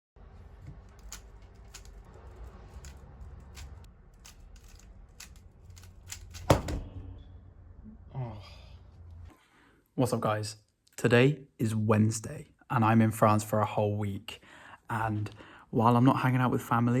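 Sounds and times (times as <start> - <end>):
loud knock: 6.5 - 7.2.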